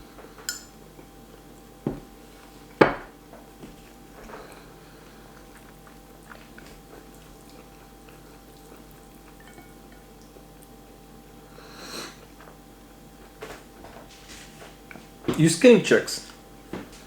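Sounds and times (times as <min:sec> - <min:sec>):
faint steady hum: 0:00.0 - 0:17.0
person chewing spaghetti: 0:03.4 - 0:13.3.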